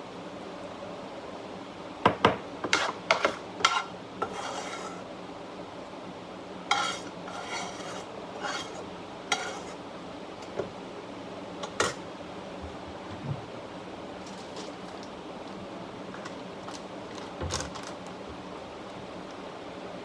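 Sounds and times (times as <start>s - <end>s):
utensil scraping in a pan: 2.6s - 5.1s, 6.7s - 9.8s.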